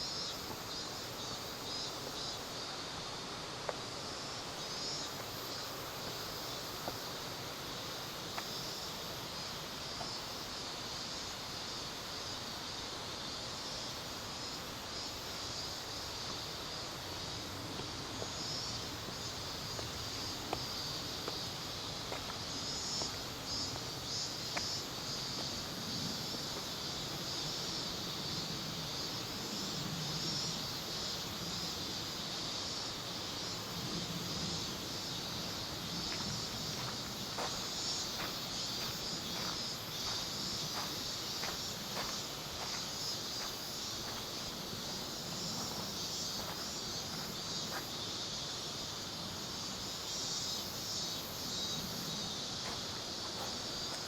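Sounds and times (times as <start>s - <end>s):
cicadas droning: 0.0s - 54.0s
footsteps: 36.0s - 47.9s, 52.6s - 54.0s.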